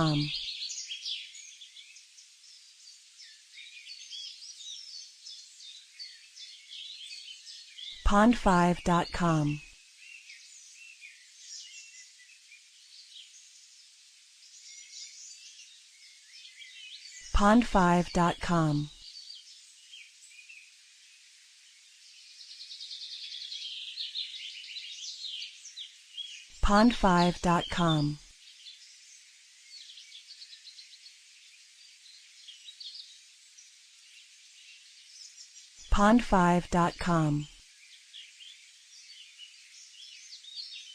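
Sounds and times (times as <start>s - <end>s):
small birds chirping: 0.0s - 40.9s
birds chirping: 26.2s - 28.2s
steady hiss: 28.4s - 35.9s.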